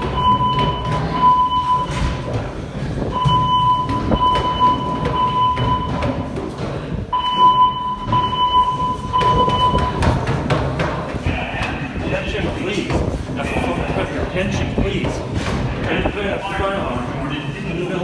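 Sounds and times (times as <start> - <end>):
high steady alarm tone: 0.0 - 2.4, 3.1 - 6.4, 7.1 - 10.3
low thumps: 0.0 - 17.0
voice announcements: 11.2 - 18.0.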